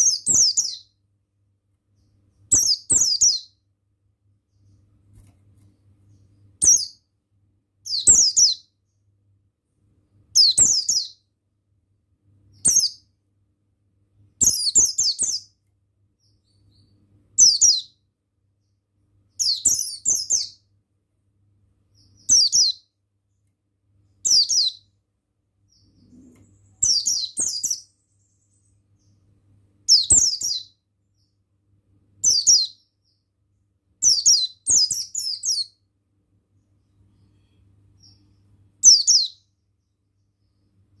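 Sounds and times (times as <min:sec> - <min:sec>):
bird singing twittering phrases: 0:00.0 - 0:01.0, 0:01.9 - 0:03.6, 0:04.2 - 0:07.1, 0:07.8 - 0:09.1, 0:10.2 - 0:11.3, 0:12.5 - 0:13.2, 0:14.4 - 0:20.8, 0:21.9 - 0:25.0, 0:25.6 - 0:31.4, 0:32.2 - 0:35.9, 0:36.5 - 0:41.0.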